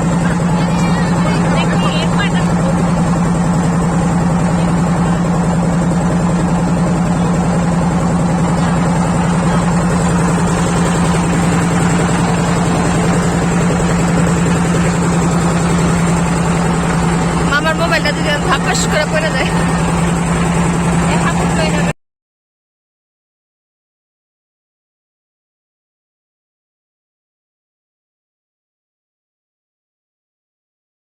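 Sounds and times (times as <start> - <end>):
boat engine droning: 0.0 - 21.9.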